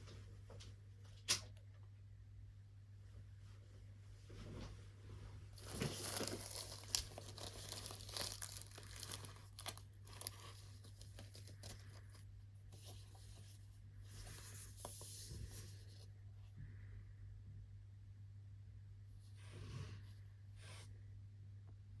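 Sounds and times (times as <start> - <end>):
packaging crinkling: 5.6 - 12.2.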